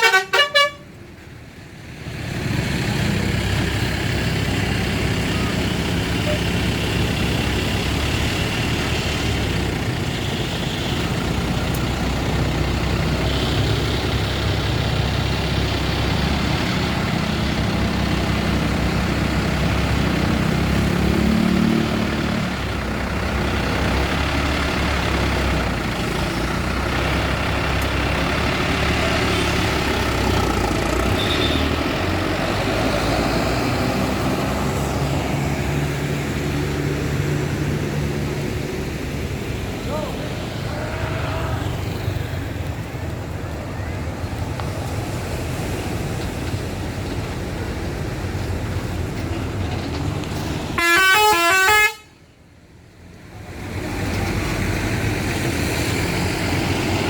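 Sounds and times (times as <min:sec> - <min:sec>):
bus engines rumbling: 0:00.0 - 0:57.0.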